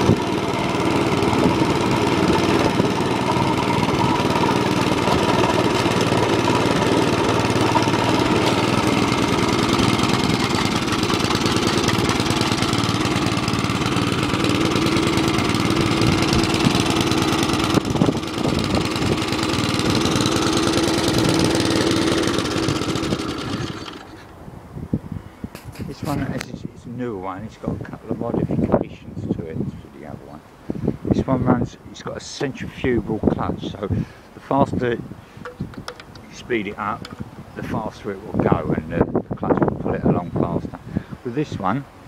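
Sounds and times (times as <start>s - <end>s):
lawn mower engine running: 0.0s - 24.4s, 35.4s - 37.6s.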